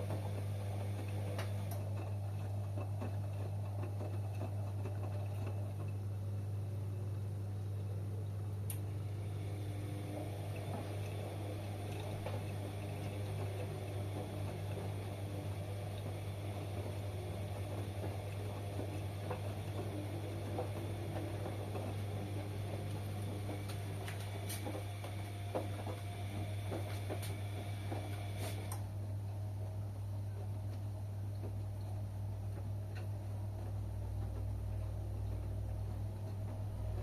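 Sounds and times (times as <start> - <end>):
water sloshing in washing machine: 0.0 - 6.9, 8.9 - 28.8
washing machine hum: 0.0 - 37.0.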